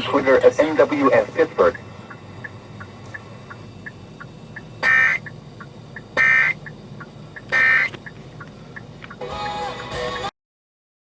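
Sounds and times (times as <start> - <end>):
faint radio hiss: 0.0 - 2.1
screechy digital data tones: 0.0 - 5.4, 6.2 - 8.0.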